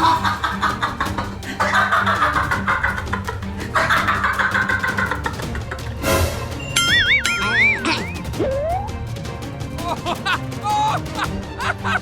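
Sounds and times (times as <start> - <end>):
background music: 0.0 - 12.0
cartoon warbling whistle: 6.6 - 9.0.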